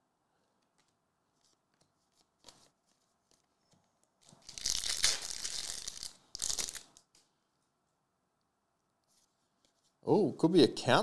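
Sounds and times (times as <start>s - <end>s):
wrapper ripping: 4.4s - 7.0s.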